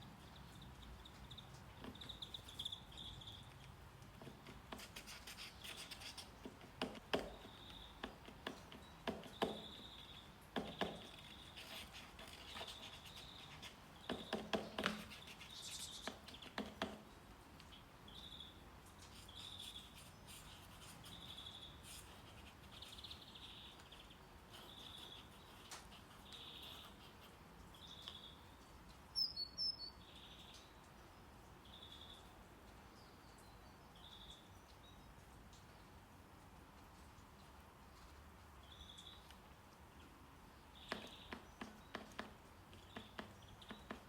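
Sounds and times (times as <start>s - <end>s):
sharp clicks and taps: 40.9s - 44.0s.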